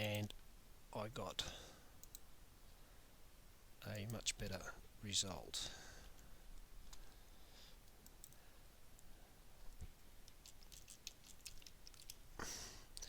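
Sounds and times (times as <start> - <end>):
soft clicks: 2.0 - 2.3, 7.9 - 8.4.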